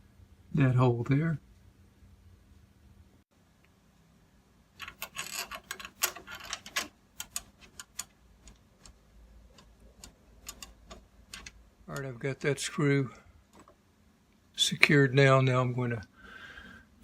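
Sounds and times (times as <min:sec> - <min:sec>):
screwdriver metal clicks and scrapes: 0:04.8 - 0:12.7.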